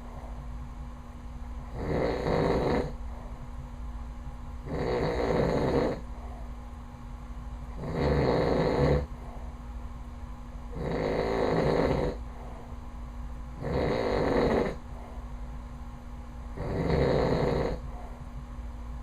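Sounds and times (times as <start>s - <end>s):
faint steady hum: 0.0s - 19.0s
man snoring loudly: 1.7s - 3.0s, 4.7s - 6.0s, 7.8s - 9.1s, 10.7s - 12.2s, 13.6s - 14.8s, 16.6s - 17.8s.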